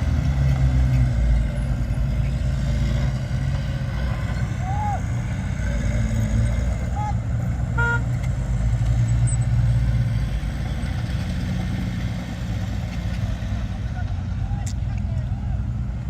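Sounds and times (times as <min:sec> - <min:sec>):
heavy diesel machinery rumbling: 0:00.0 - 0:16.0
short horn toot: 0:07.8 - 0:08.1.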